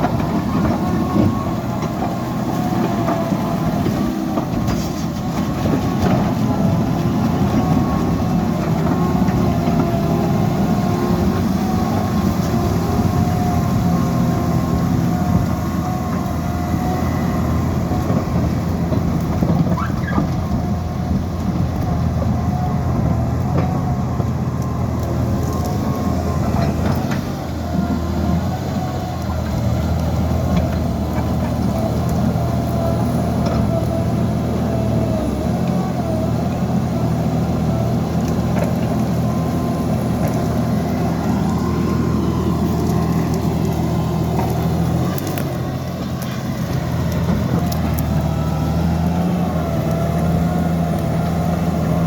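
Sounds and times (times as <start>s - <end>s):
diesel engine under load: 0.0s - 52.0s.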